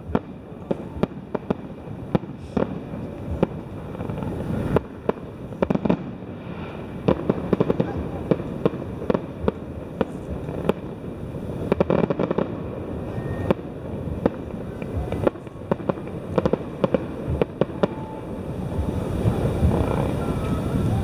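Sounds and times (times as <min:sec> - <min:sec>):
distant fireworks bursts: 0:00.0 - 0:21.0.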